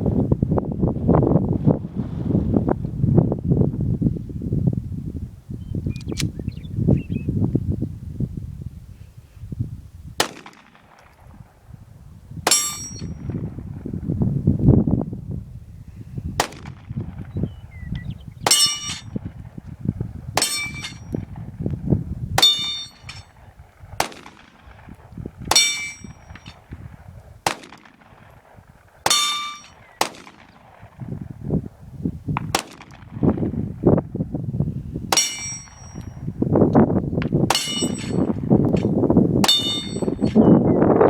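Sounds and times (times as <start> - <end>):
pistol shots: 10.2 - 11.3, 16.4 - 16.9, 24.0 - 24.8, 27.4 - 31.0, 32.4 - 33.2
metallic ring of steel target: 12.5 - 13.4, 18.5 - 19.2, 20.4 - 21.3, 22.4 - 23.4, 25.5 - 26.6, 29.1 - 29.8, 35.1 - 36.3, 37.5 - 40.6.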